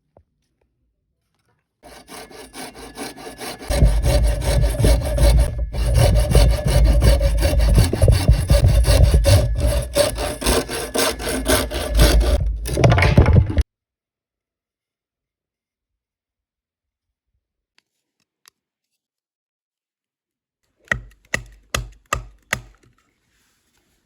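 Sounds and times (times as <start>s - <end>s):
hand saw cutting bamboo: 1.8s - 13.6s.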